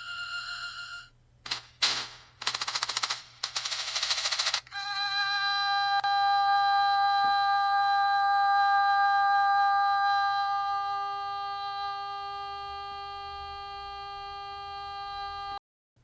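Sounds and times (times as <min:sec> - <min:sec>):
lower tone: 0:04.8 - 0:15.6.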